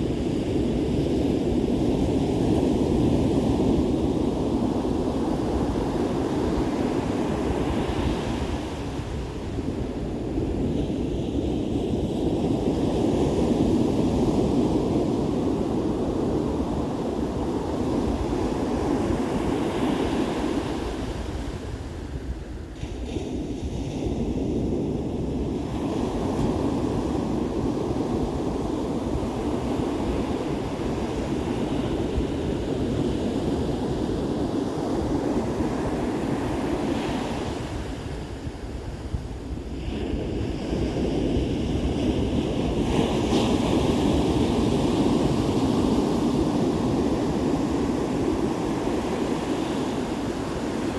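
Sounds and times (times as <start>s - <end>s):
wind rumbling on microphone: 0.0s - 50.9s
ocean surf breaking: 22.7s - 50.9s.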